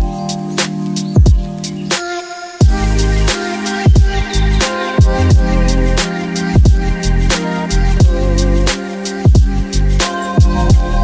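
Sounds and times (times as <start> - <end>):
hip-hop beat: 0.0 - 11.0.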